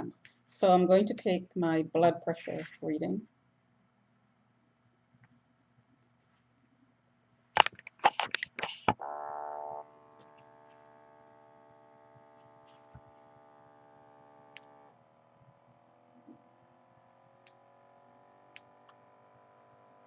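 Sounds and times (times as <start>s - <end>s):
electric air pump whining: 8.0s - 20.0s.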